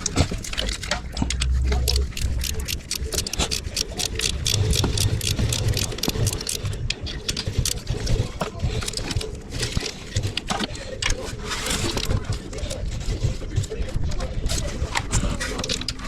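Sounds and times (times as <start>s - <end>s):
metallic clicks of hand tools: 0.0s - 7.8s
low rumble: 0.6s - 6.9s.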